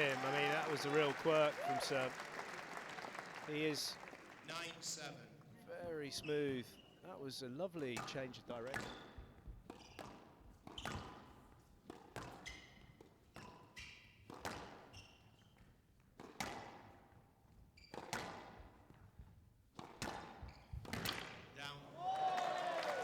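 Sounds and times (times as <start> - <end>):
shoes squeaking on court floor: 8.7 - 11.6, 12.2 - 15.8, 17.8 - 18.5, 20.3 - 21.6.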